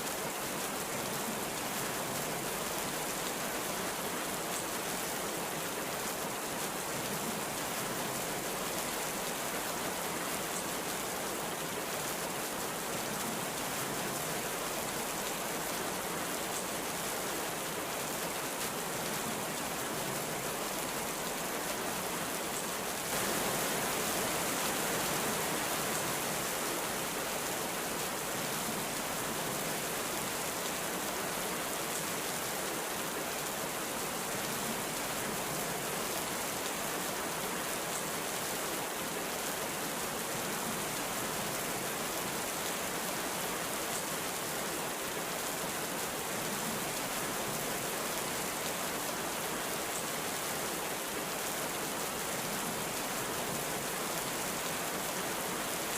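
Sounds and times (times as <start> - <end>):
heavy rain falling: 0.0 - 55.9.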